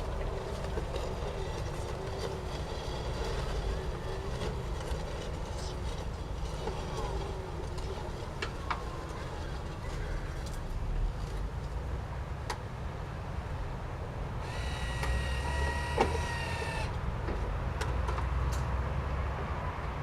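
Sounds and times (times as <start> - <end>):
garden tractor rumble: 0.0 - 19.8
electric motor whine: 14.4 - 17.0.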